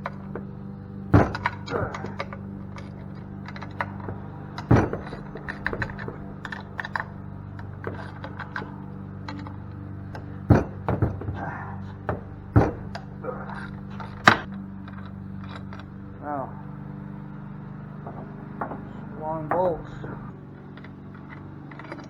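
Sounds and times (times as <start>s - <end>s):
tools and metal parts clanking: 0.0s - 16.7s, 17.9s - 22.0s
steady low hum: 0.0s - 22.0s
louder knocks: 1.1s - 7.0s, 10.4s - 13.1s, 18.0s - 20.3s.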